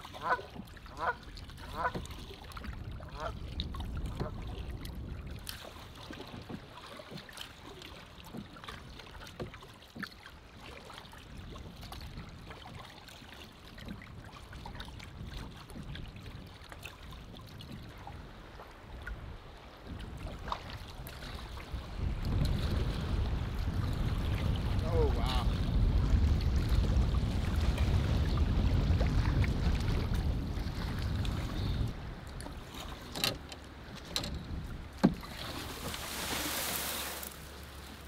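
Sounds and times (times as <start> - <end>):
wind rumble on microphone: 0.0 - 6.6, 11.0 - 36.1
water dripping and splashing: 0.0 - 22.7, 23.3 - 38.0
paddle dipping in water: 0.0 - 38.0
water washing: 21.0 - 38.0.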